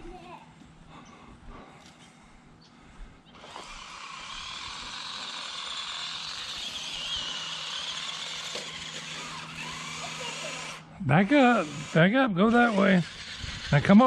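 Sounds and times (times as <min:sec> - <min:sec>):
toy car motor whirring: 0:03.4 - 0:14.0.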